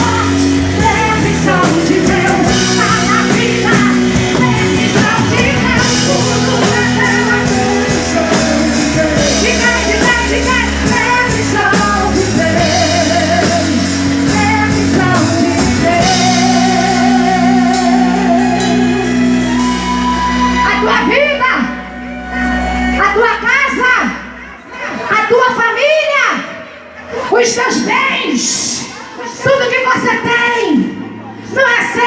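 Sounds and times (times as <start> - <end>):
woman singing: 0.0 - 21.2
gospel band playing: 0.0 - 32.0.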